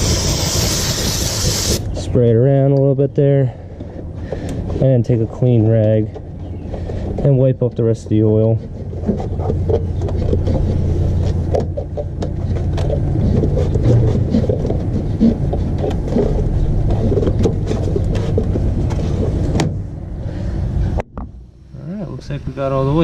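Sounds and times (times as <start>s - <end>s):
steady low rumble: 0.0s - 23.0s
rag rubbing and scraping: 4.3s - 19.6s.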